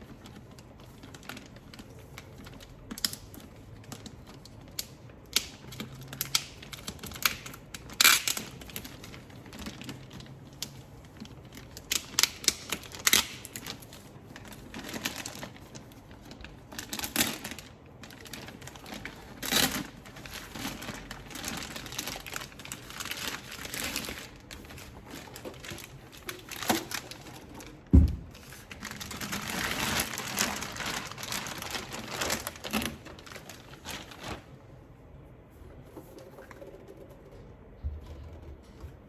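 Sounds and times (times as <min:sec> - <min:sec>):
plastic packaging crinkling: 0:00.0 - 0:34.8
sharp thump: 0:27.9 - 0:28.3.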